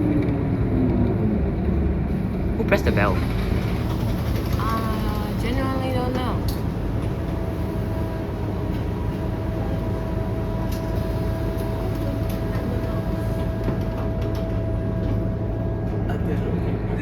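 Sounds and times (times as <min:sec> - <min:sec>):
bus engine rumble: 0:00.0 - 0:17.0.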